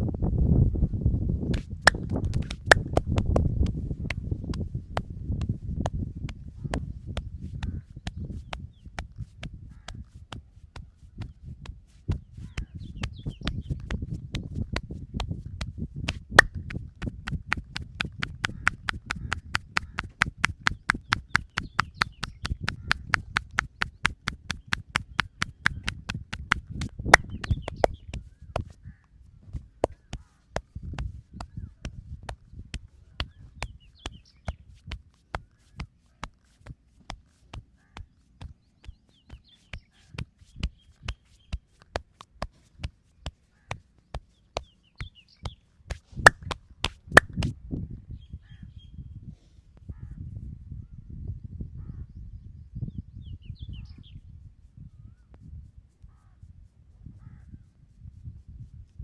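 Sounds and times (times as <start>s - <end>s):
hands slapping a body: 1.5s - 28.8s, 29.8s - 47.5s.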